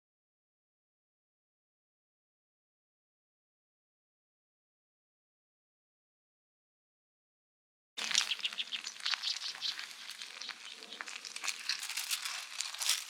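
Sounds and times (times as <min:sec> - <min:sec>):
food sizzling in a pan: 0:08.0 - 0:13.0.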